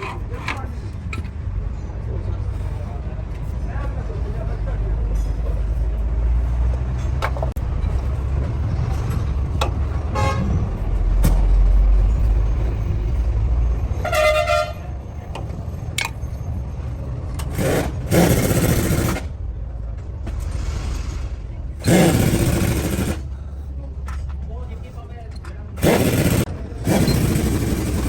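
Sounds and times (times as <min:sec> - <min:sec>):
road traffic rumble: 0:00.0 - 0:28.0
vehicle horn: 0:10.1 - 0:10.6, 0:14.0 - 0:14.9
burst of rushing noise: 0:20.3 - 0:21.9.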